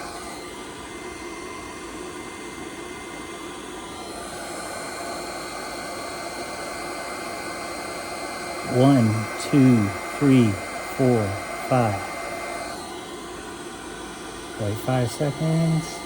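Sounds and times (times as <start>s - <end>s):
cooling fan hiss with whine: 0.0s - 16.0s
higher electronic whine: 8.5s - 13.5s, 14.5s - 16.0s.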